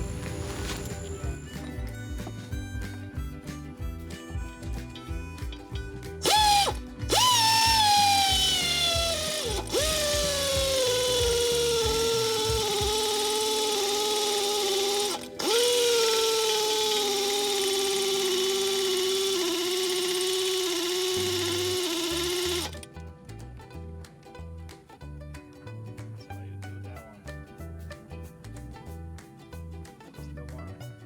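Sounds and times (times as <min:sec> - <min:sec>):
background music: 0:00.0 - 0:18.7
power tool motor whining: 0:00.0 - 0:22.9.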